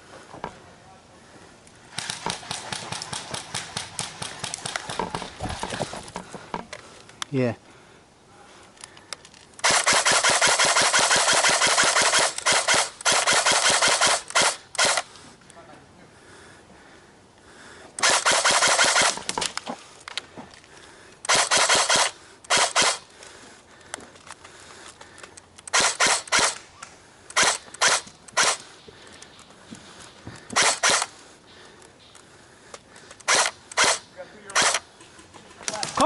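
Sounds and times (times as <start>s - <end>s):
airsoft gun firing bursts: 1.9s - 5.1s, 9.6s - 15.0s, 18.0s - 19.4s, 21.3s - 23.0s, 25.7s - 26.6s, 27.3s - 28.6s, 30.5s - 31.2s, 33.2s - 34.8s.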